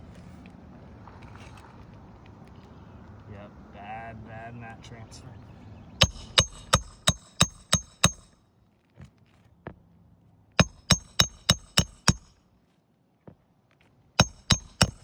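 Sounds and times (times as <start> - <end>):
hammer driving nails: 6.0 - 8.4, 10.6 - 12.4, 14.2 - 15.0.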